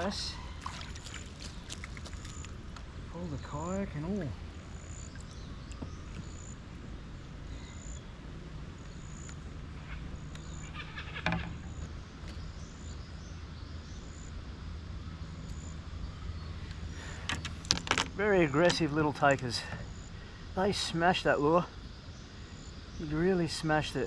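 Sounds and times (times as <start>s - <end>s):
birds calling: 0.0s - 14.3s, 15.5s - 24.0s
clicks and rattles: 17.2s - 19.4s.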